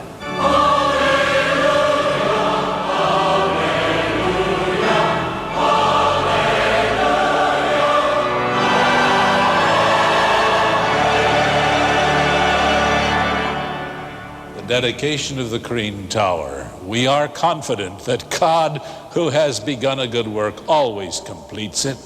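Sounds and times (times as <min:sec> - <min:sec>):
choir singing held chords: 0:00.0 - 0:15.6.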